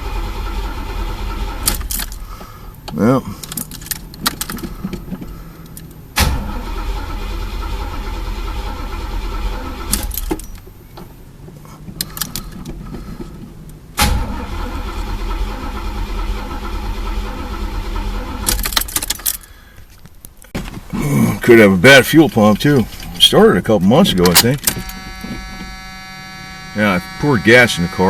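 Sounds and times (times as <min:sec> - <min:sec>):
engine cranking on starter: 0:00.0 - 0:10.7, 0:11.8 - 0:19.6, 0:22.3 - 0:28.0.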